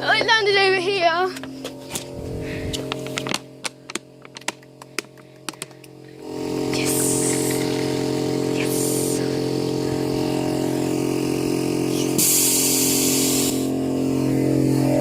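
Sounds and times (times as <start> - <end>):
air compressor humming: 0.0 - 15.0
compressed air hissing: 4.8 - 15.0.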